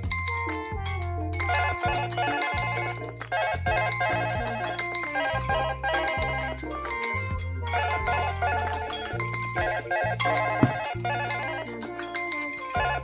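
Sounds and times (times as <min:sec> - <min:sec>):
phone alarm electronic melody: 0:00.0 - 0:13.0.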